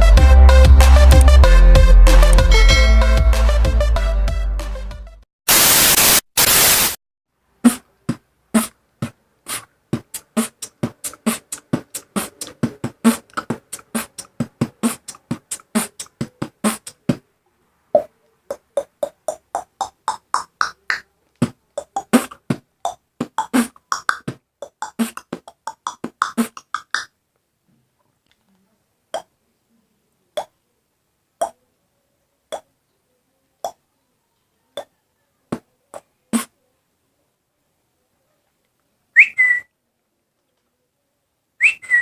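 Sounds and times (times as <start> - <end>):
short hiss bursts: 5.5 - 7.0
beatboxing kick and snare: 7.6 - 17.2, 18.0 - 27.1.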